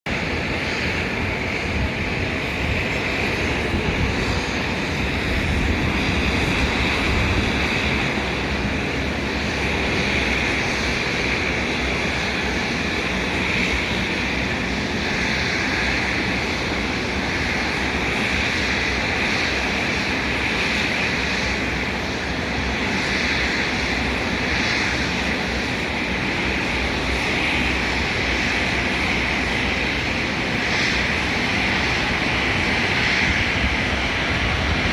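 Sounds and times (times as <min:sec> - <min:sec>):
jet engines roaring for takeoff: 0:00.1 - 0:34.9.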